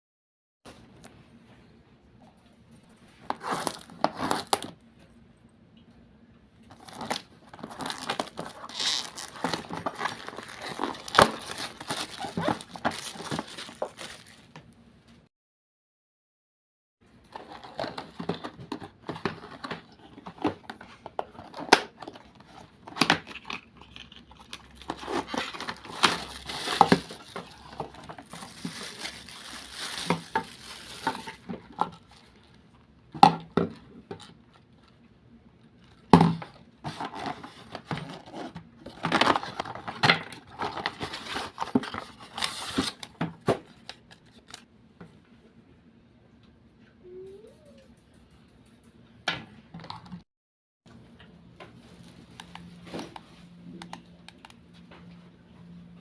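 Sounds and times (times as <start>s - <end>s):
plastic and cardboard crinkling: 3.2s - 4.8s, 6.7s - 14.8s, 17.3s - 32.7s, 35.8s - 44.6s.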